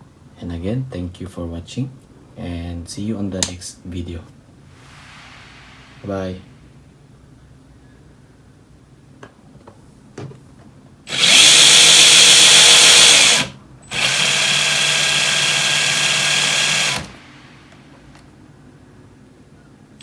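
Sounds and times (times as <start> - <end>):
electric motor whirring: 11.1 - 17.2.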